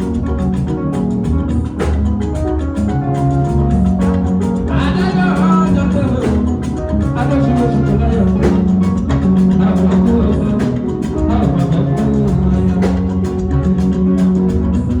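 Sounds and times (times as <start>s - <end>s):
loud band music with drums: 0.0s - 15.0s.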